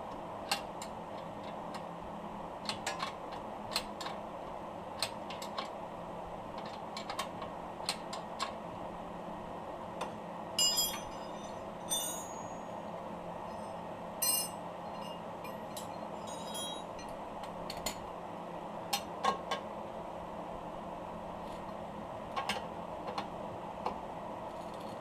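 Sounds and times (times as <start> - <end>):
steady background hum: 0.0 - 25.0
metal tools clinking on metal: 10.6 - 12.8, 13.5 - 17.1.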